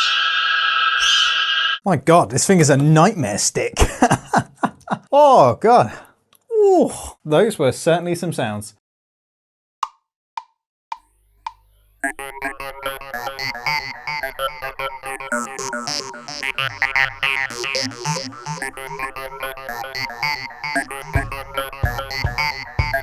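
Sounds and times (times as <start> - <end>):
electronic music with synth lead: 12.0 - 23.0.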